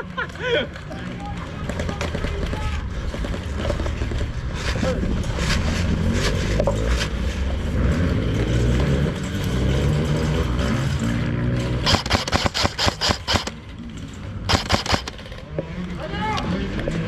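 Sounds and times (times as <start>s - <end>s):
airsoft gun shots: 11.8s - 13.6s, 14.5s - 15.4s.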